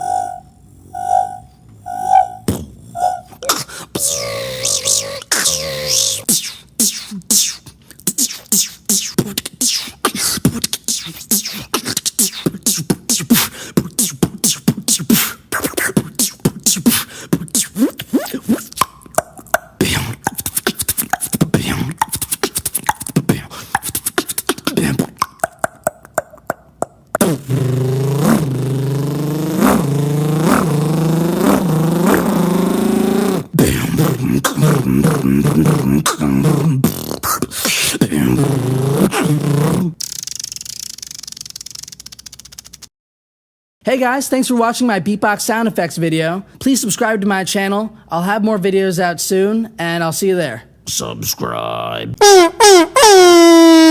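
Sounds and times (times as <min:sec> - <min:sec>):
buzzing vocal tone: 0:00.0 - 0:26.5, 0:27.2 - 0:41.0
beatboxing clicks and pops: 0:03.4 - 0:42.9.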